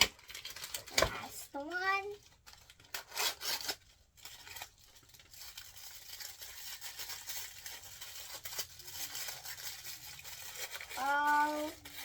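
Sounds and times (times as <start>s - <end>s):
plastic wrapper rustling and tearing: 0.0s - 12.0s.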